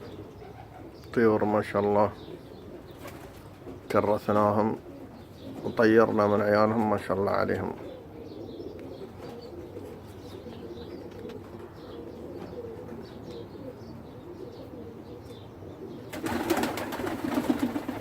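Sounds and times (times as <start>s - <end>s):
pigeons cooing: 0.0s - 18.0s
wings flapping: 3.0s - 3.4s, 16.1s - 18.0s.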